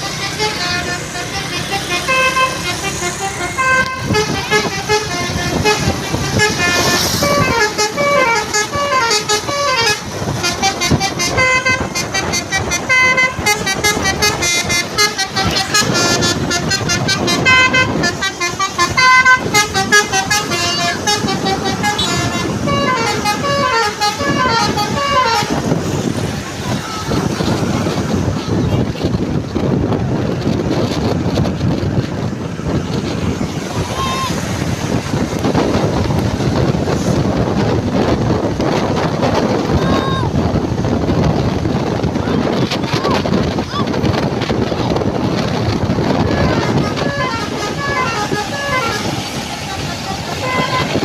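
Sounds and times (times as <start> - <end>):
multi-tone bus horn melody: 0.0 - 29.8, 44.9 - 51.0.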